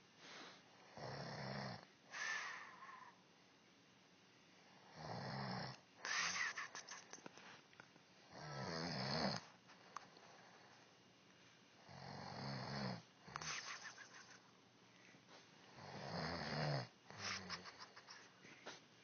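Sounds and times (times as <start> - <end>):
woman snoring: 0.9 - 3.2, 4.9 - 5.8, 8.3 - 9.4, 11.8 - 13.0, 15.8 - 16.9
noisy breath with clicks: 6.0 - 7.8.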